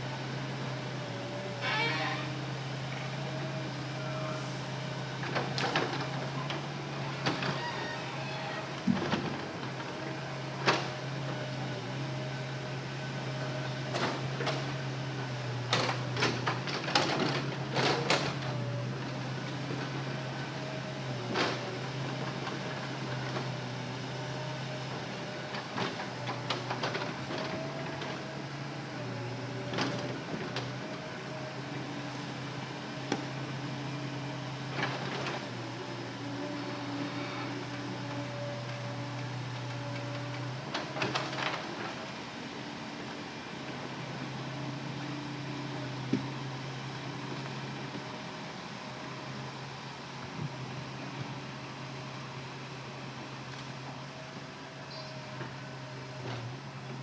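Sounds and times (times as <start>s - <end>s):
excavator engine hum: 0.0s - 57.0s
hydraulic whine: 1.6s - 2.6s.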